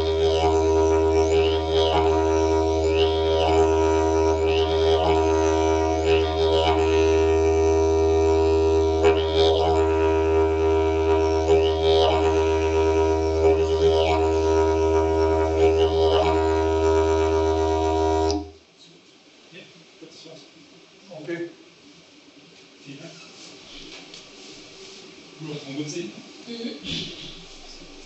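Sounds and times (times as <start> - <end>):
didgeridoo drone: 0.0 - 18.6.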